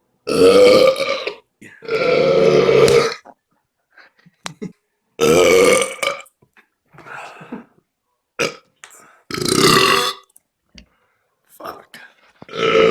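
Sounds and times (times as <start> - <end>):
man burping: 0.3 - 3.3, 4.5 - 6.2, 8.4 - 8.6, 9.3 - 10.3, 12.5 - 12.9.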